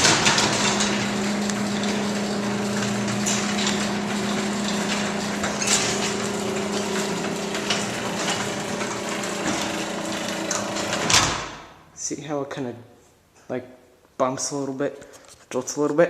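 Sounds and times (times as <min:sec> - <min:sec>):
door rollers rattling on track: 0:00.0 - 0:11.5
garage door opener motor hum: 0:00.0 - 0:11.6
clicks: 0:00.8 - 0:02.0.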